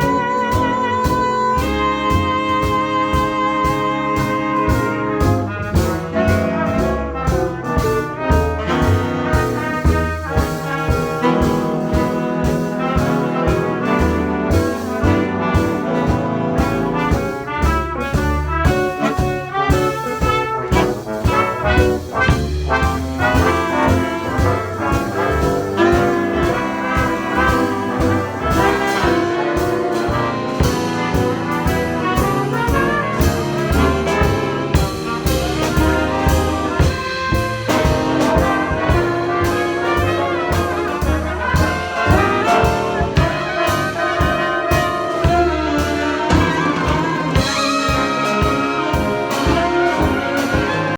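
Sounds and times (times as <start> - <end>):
trumpets and trombones: 0.0 - 50.9
saxophones: 18.7 - 35.6, 41.5 - 50.9.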